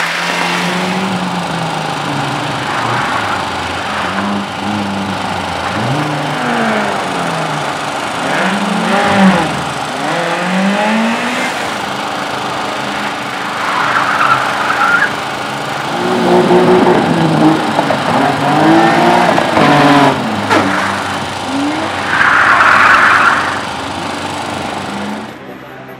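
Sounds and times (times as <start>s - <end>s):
race car engine revving: 0.0s - 25.5s
tyres squealing: 12.8s - 15.3s, 19.8s - 25.3s.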